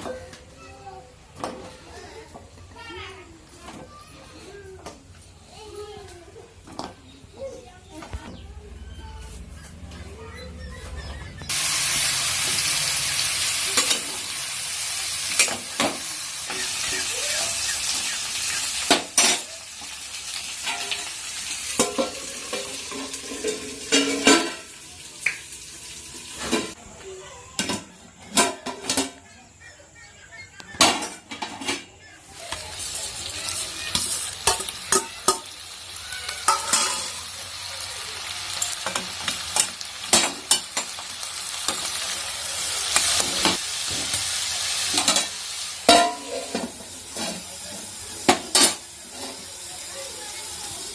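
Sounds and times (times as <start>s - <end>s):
food sizzling in hot oil: 11.4s - 26.8s, 32.2s - 50.9s
spatula scraping a pan: 36.3s - 37.3s.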